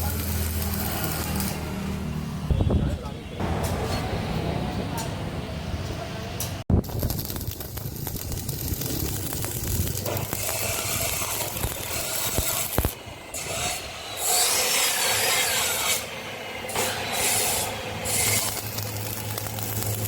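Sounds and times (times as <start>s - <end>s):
metal scraping and rasping: 9.1s - 20.0s.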